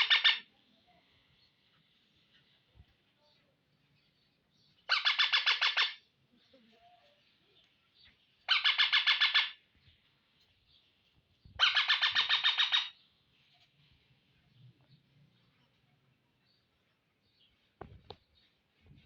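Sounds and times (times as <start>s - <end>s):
parrot screeching: 0.0s - 0.4s, 4.9s - 6.0s, 8.5s - 9.6s, 11.6s - 13.0s.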